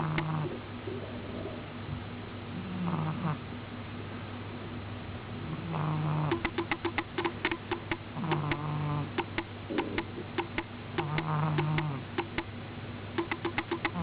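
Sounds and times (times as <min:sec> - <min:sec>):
cat snoring: 0:00.0 - 0:00.6, 0:02.6 - 0:03.4, 0:05.5 - 0:06.4, 0:08.2 - 0:09.2, 0:11.0 - 0:12.1.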